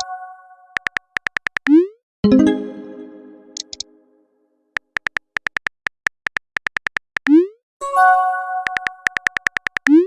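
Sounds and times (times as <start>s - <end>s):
synthesized chime: 2.3s - 3.6s.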